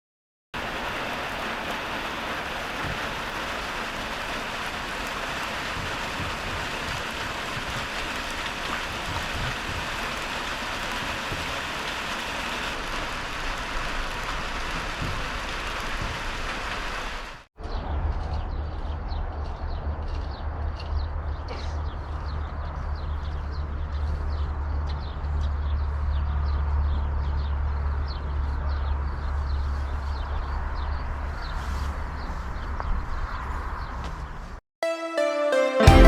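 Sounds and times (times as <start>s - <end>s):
heavy rain falling: 0.6s - 17.5s.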